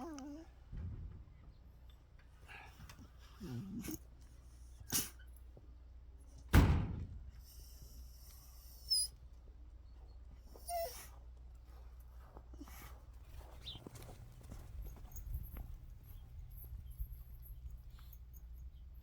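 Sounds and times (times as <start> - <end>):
dog whining: 0.0 - 0.6, 3.4 - 4.0, 8.2 - 9.2, 10.5 - 11.2
knocks and heavy thump: 0.7 - 1.7, 6.5 - 7.4.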